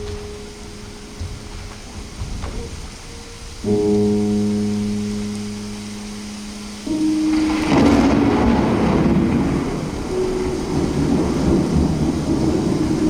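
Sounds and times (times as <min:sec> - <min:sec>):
thunder crack and rumble: 0:00.0 - 0:03.7, 0:06.7 - 0:13.0
low musical drone: 0:00.0 - 0:13.0.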